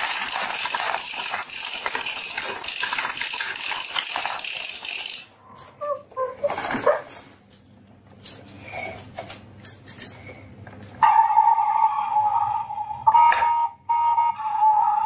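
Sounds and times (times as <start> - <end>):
marbles clattering on wooden run: 0.0 - 5.3.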